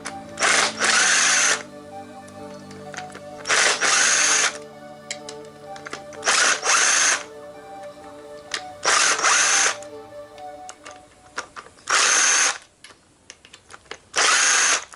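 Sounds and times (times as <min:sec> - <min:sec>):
background music: 0:00.0 - 0:11.6.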